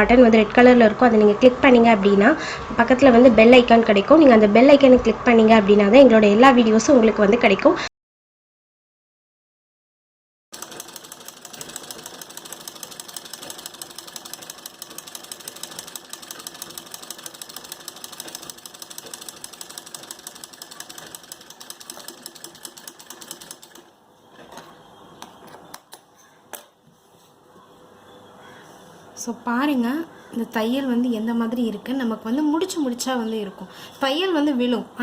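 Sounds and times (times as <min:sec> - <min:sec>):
sewing machine stitching: 0:10.6 - 0:23.9.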